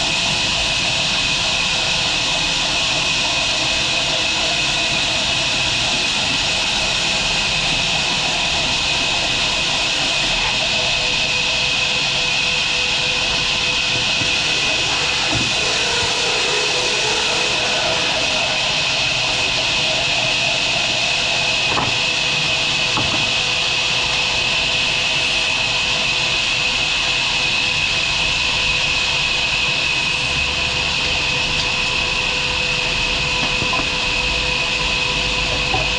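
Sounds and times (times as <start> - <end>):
steady hum: 0.0 - 26.5
machinery hissing: 0.0 - 35.9.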